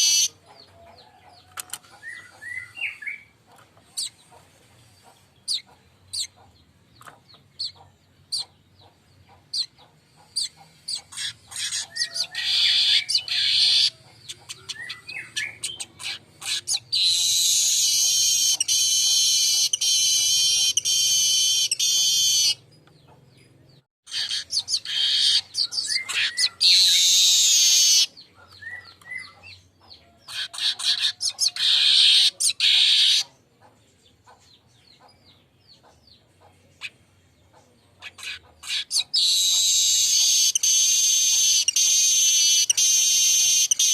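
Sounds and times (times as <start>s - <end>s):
weaver bird buzzing chatter: 0.0s - 0.4s, 15.4s - 22.6s, 24.1s - 28.1s, 38.2s - 43.9s.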